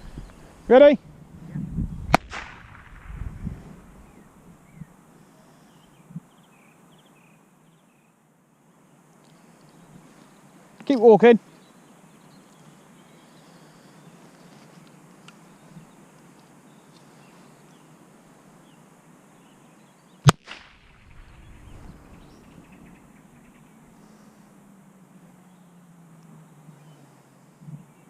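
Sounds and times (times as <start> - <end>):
starting pistol shot: 2.1 - 3.6, 20.3 - 22.3.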